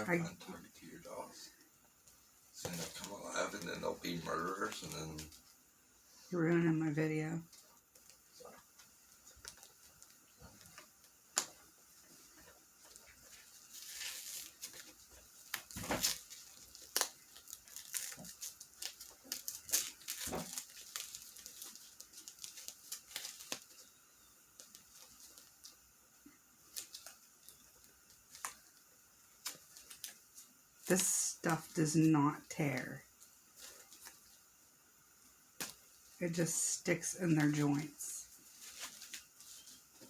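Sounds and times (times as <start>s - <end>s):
packing wrap crinkling: 2.6s - 5.6s, 7.5s - 31.8s, 32.8s - 34.6s, 37.3s - 40.0s.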